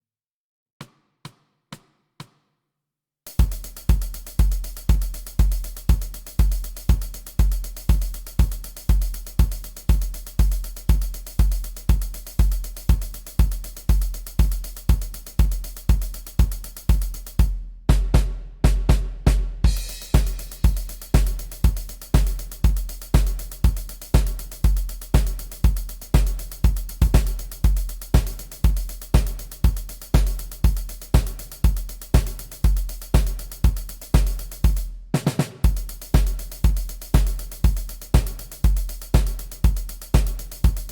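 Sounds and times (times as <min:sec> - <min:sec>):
rock drum beat: 0:03.3 - 0:40.9.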